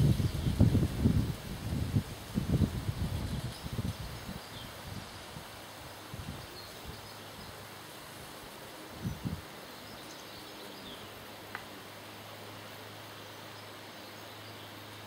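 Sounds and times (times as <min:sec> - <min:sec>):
steady hiss: 0:00.0 - 0:15.0.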